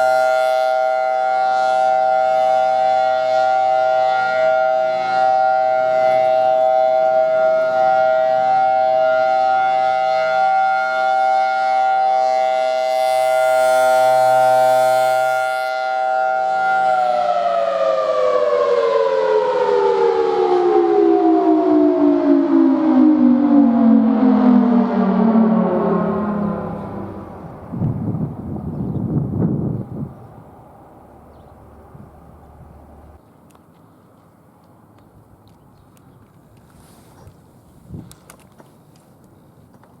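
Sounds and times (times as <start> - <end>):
warning siren two-note chord: 0.0 - 28.1.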